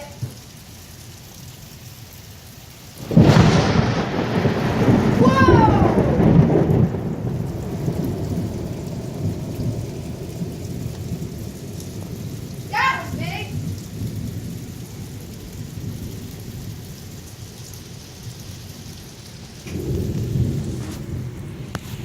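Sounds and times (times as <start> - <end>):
steady rain: 0.0 - 22.0
thunderclap rolling: 3.0 - 17.0, 19.6 - 22.0.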